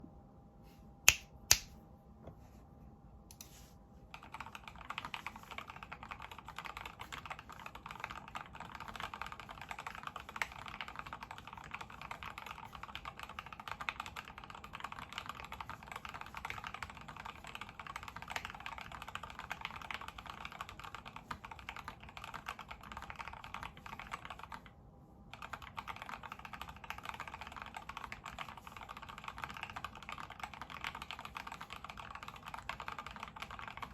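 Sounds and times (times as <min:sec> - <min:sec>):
sharp clicks: 0:01.1 - 0:01.7
mechanical keyboard typing: 0:04.1 - 0:24.7, 0:25.3 - 0:33.9.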